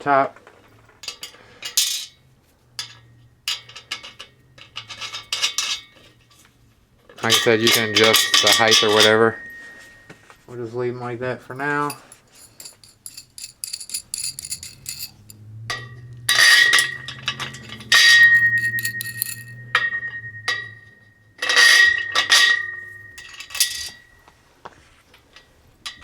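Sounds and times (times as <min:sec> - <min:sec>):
metal hooks clanking on metal frame: 0:01.0 - 0:02.2, 0:02.8 - 0:06.2, 0:07.2 - 0:09.7, 0:11.6 - 0:20.6, 0:21.4 - 0:24.0.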